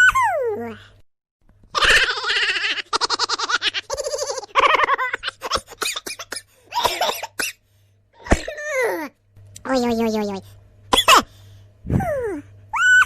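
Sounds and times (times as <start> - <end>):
person laughing in rapid bursts: 1.7 - 7.3.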